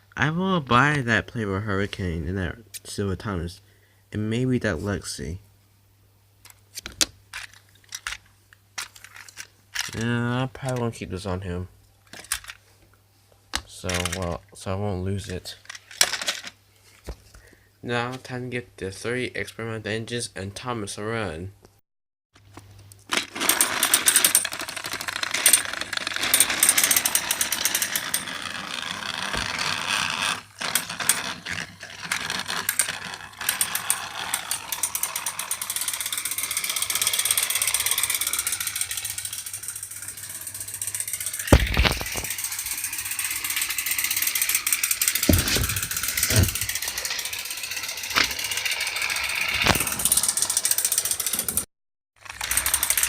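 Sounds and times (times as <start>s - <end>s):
toy train motor whirring: 23.1s - 53.0s.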